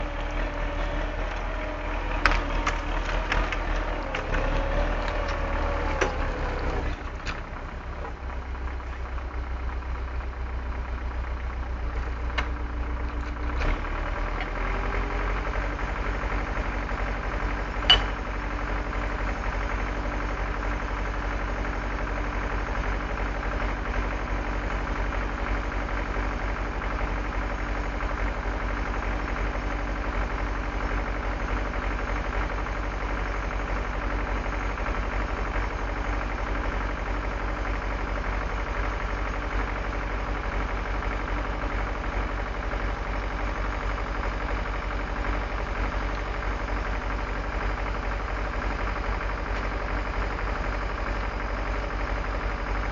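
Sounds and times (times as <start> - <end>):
tractor diesel engine running: 0.0 - 52.9
sharp knocks and clanks: 17.8 - 18.2.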